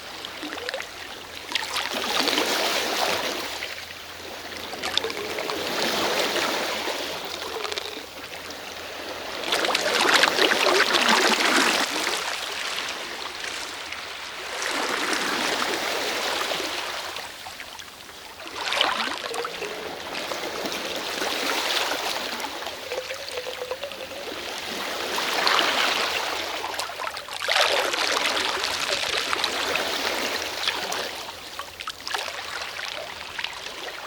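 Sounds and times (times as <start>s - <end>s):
water trickling and gurgling: 0.0s - 14.7s, 17.1s - 34.0s
sea waves washing in: 18.4s - 31.6s.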